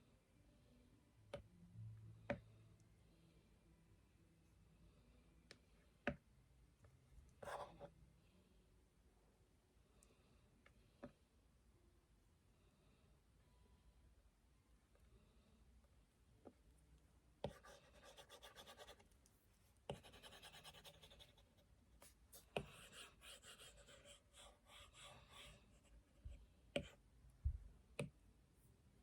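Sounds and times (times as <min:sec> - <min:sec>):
pencil strokes scratching: 0:17.5 - 0:27.0.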